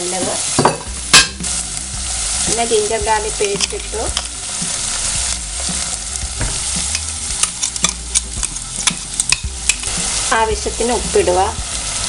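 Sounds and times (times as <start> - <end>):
food sizzling in oil: 0.0 - 12.0
utensil knocking against pan: 6.4 - 9.8.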